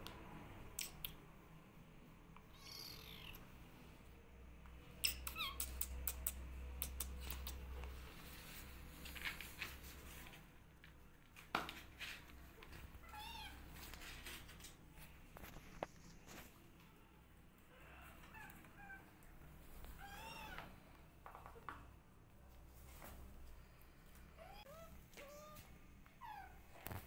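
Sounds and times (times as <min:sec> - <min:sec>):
kittens mewing: 0:02.5 - 0:03.4.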